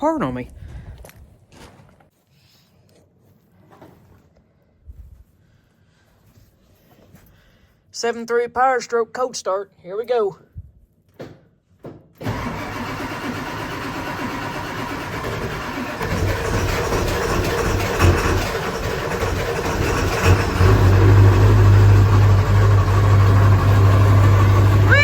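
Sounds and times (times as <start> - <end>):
diesel engine starting and running: 12.2 - 25.0.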